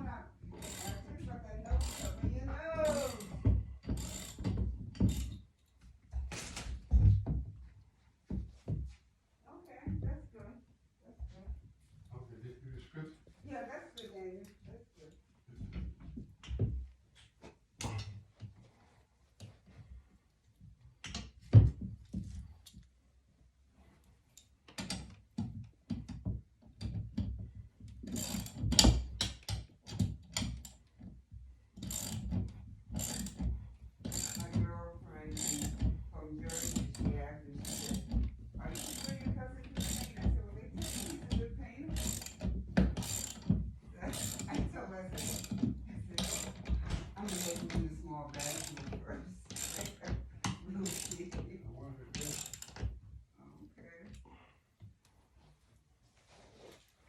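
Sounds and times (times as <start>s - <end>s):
metal hardware knocks and clicks: 0.5s - 5.5s, 24.4s - 31.2s, 31.8s - 34.7s, 35.3s - 51.5s.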